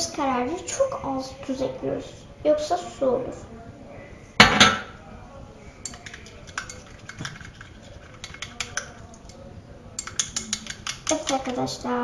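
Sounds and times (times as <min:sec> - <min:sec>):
stick tapping against a plate: 0:08.2 - 0:09.0, 0:10.0 - 0:11.6.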